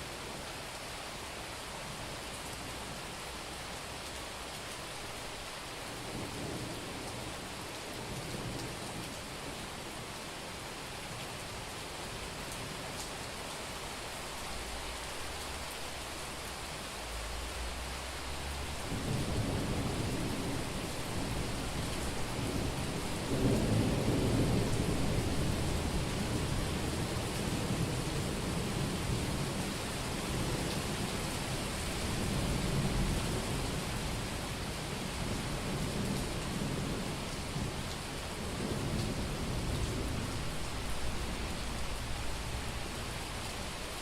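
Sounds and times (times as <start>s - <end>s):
rain falling on street: 0.0s - 44.0s
thunder rumbling: 18.4s - 28.6s, 38.6s - 43.8s.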